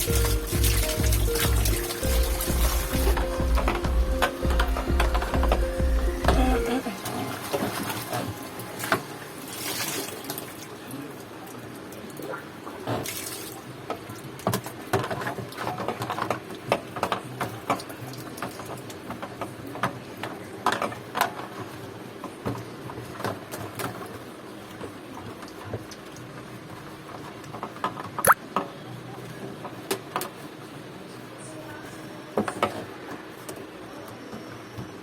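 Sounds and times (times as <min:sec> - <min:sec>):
water splashing and dripping: 0:00.0 - 0:13.7.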